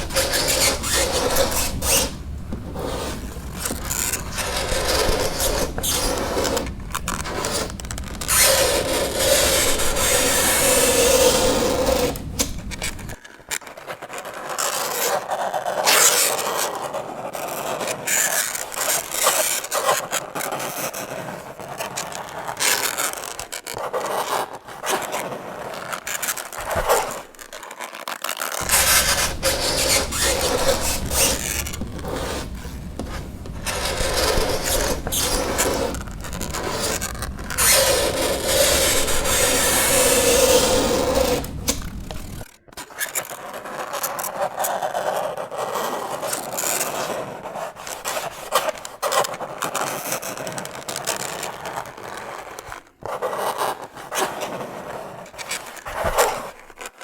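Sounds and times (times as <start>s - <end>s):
fingernails scraping chalkboard: 0.0s - 13.2s, 16.5s - 27.4s, 28.6s - 42.5s
high screech: 28.6s - 42.4s.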